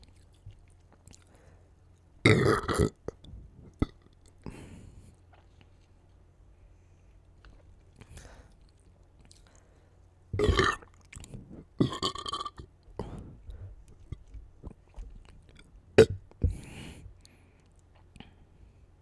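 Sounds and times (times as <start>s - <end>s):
person burping: 2.3s - 3.0s, 10.4s - 10.9s, 11.8s - 12.6s, 16.0s - 16.6s
mouth and swallowing noises: 10.4s - 17.0s.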